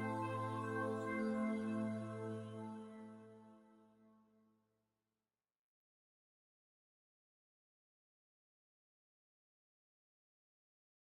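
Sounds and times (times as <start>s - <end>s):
background music: 0.0s - 3.7s.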